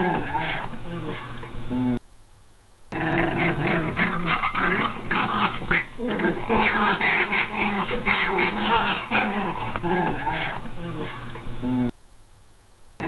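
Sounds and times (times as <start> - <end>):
cat growling: 2.9 - 11.8.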